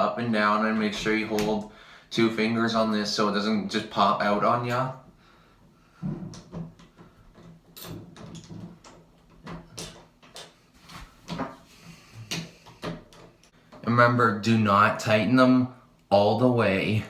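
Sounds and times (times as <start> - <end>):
doorknob parts clicking and rattling: 6.3 - 10.6, 12.3 - 13.6.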